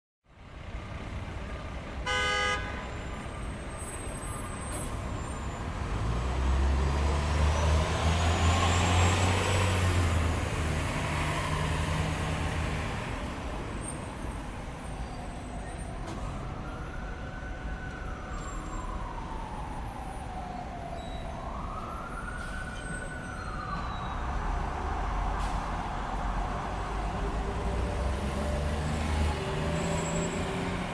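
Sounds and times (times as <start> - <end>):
car horn toot: 2.0 - 2.8
ambulance siren wailing: 14.1 - 30.9.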